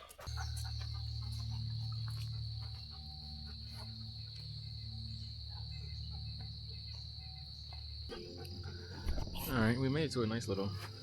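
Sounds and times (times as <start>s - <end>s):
insects trilling: 0.2s - 11.0s.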